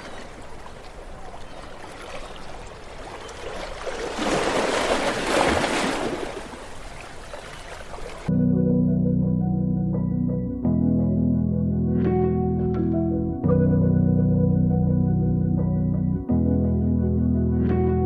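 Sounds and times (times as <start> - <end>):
ocean waves breaking: 0.0 - 8.3
ambient music: 8.3 - 18.0.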